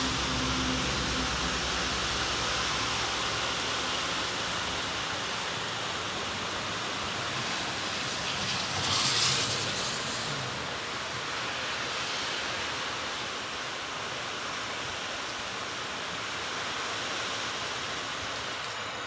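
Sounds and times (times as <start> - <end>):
low engine hum: 0.0 - 10.7
heavy rain pouring: 0.0 - 19.0.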